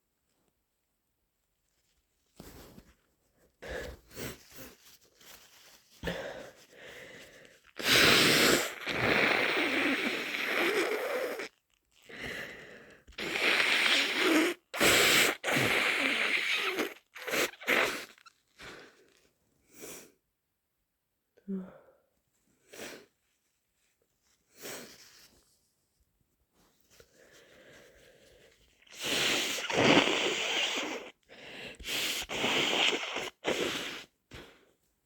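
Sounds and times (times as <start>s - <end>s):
wet nose blowing: 3.7s - 19.1s, 28.8s - 34.6s
person sneezing: 31.8s - 34.5s.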